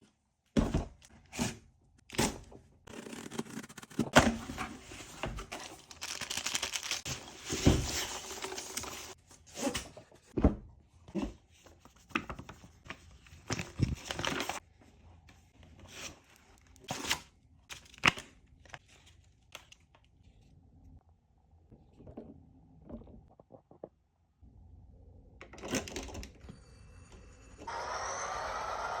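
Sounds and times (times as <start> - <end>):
packaging tearing and rustling: 5.5 - 9.2.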